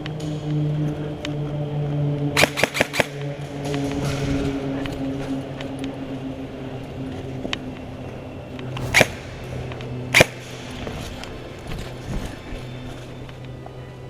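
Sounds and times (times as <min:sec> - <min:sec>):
steady low hum: 0:08.6 - 0:11.5.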